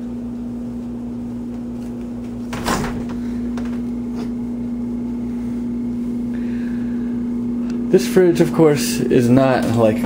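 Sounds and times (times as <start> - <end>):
steady low hum: 0.0 - 10.0
refrigerator door clicks: 2.4 - 3.9.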